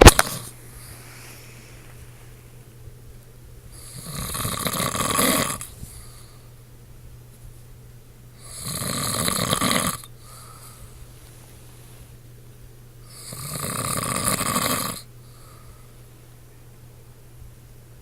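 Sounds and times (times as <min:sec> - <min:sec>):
man snoring: 0:03.8 - 0:05.6, 0:08.4 - 0:10.1, 0:13.1 - 0:15.1.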